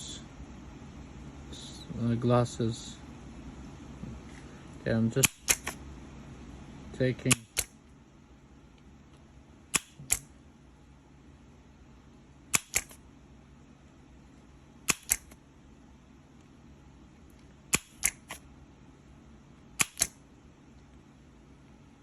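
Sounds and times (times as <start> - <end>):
desoldering pump snapping clicks: 5.2 - 5.8, 7.3 - 7.7, 12.5 - 13.0, 14.9 - 15.4, 19.8 - 20.1.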